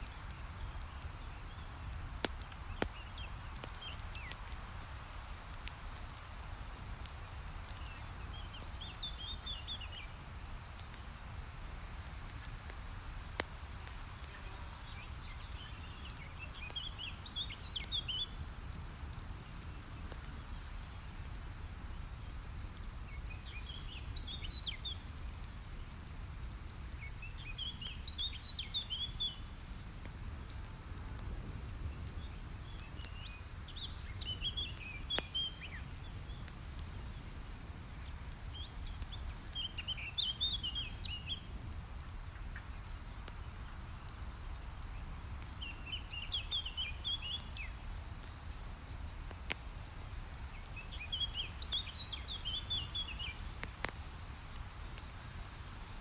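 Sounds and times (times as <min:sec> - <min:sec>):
campfire crackling: 0:00.0 - 0:56.0
songbird chirping: 0:38.5 - 0:41.5, 0:50.5 - 0:53.4.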